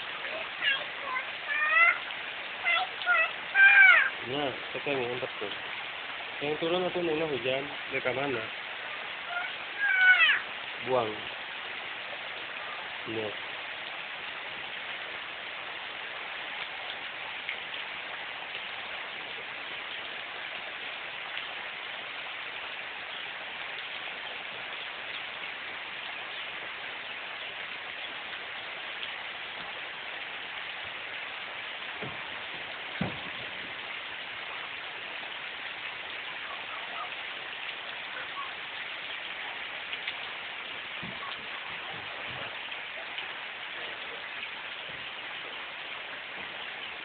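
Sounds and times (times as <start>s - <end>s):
heavy rain pouring: 0.0s - 47.0s.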